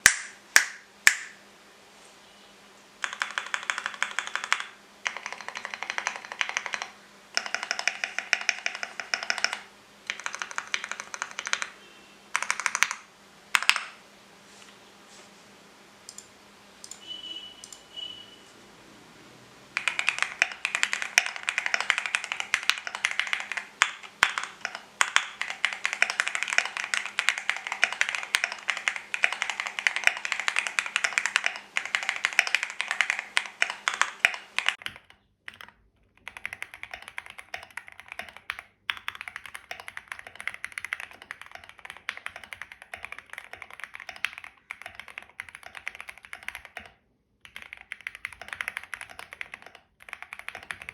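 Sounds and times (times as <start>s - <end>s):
mechanical keyboard key clacks: 3.0s - 11.8s, 12.4s - 13.0s, 19.8s - 50.9s.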